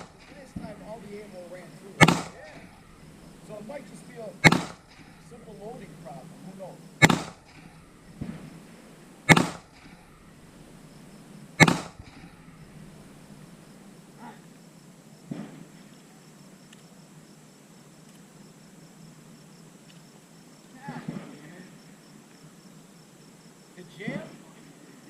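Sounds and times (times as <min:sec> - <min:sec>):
gunshots with echo: 0:00.0 - 0:01.0, 0:02.0 - 0:02.6, 0:04.4 - 0:05.1, 0:07.0 - 0:08.6, 0:09.3 - 0:10.0, 0:11.6 - 0:12.3.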